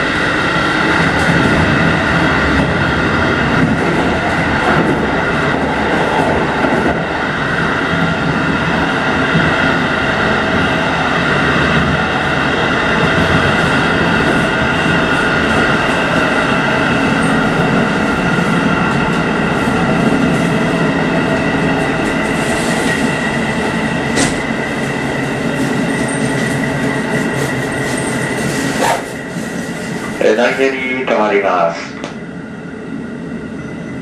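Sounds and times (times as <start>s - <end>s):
train running with whine: 0.0s - 34.0s.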